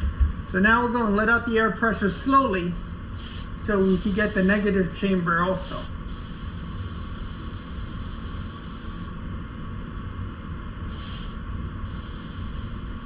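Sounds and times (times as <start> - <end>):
air hissing from valve: 2.7 - 9.2, 10.9 - 13.0.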